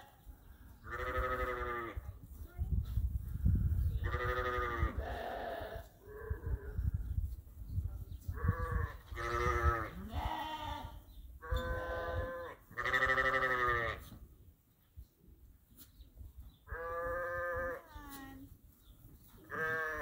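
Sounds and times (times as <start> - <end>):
sheep bleating: 0.9 - 2.0, 4.0 - 6.4, 8.4 - 14.0, 19.4 - 20.0.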